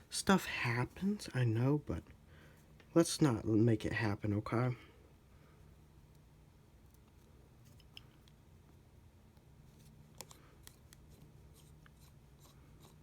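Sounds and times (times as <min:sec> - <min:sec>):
steady low hum: 0:00.0 - 0:13.0
small clicks and taps of tools: 0:10.1 - 0:11.2.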